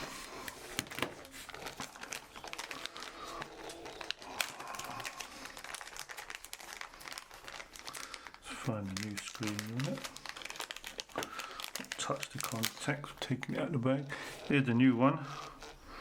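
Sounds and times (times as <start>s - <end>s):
plastic packaging crinkling: 0.0s - 16.0s.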